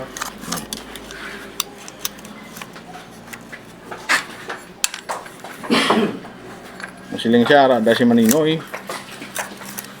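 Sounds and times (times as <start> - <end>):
hand tools clicking on metal: 7.9 - 10.0.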